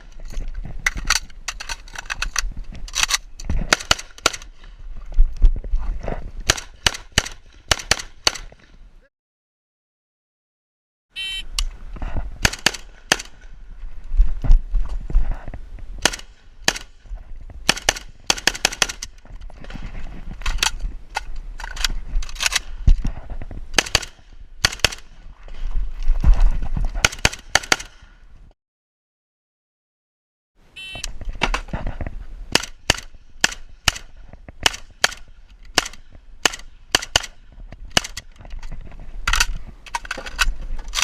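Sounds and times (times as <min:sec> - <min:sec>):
rifle shots: 0:03.0 - 0:04.5, 0:06.5 - 0:08.5, 0:12.4 - 0:13.4, 0:16.0 - 0:17.0, 0:17.6 - 0:19.1, 0:23.8 - 0:25.1, 0:27.0 - 0:28.0, 0:32.5 - 0:38.2.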